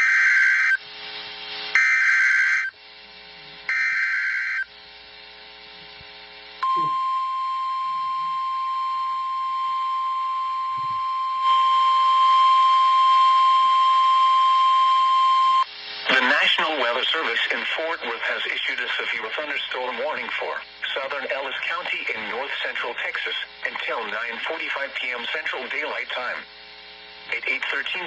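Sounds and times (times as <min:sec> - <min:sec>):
steady warning alarm tone: 0:00.0 - 0:00.9, 0:01.7 - 0:02.8, 0:03.7 - 0:04.7, 0:06.6 - 0:15.7
digital data screech bursts: 0:03.7 - 0:04.7.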